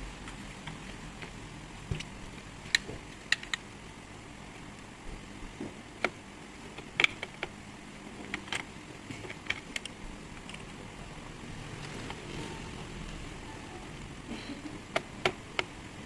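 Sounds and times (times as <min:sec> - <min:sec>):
low steady hiss: 0:00.0 - 0:16.0
small parts clicking: 0:02.7 - 0:03.7, 0:06.0 - 0:07.6, 0:08.2 - 0:10.8.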